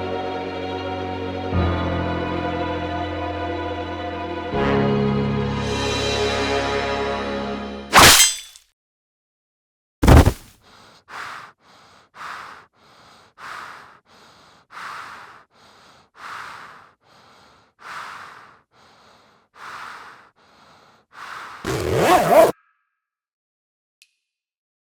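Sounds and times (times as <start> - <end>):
heavy human breathing: 10.0 - 22.0.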